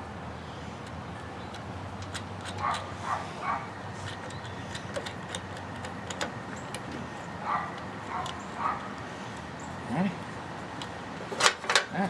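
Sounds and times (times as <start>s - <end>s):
dog barking: 2.6s - 3.7s, 7.4s - 8.9s.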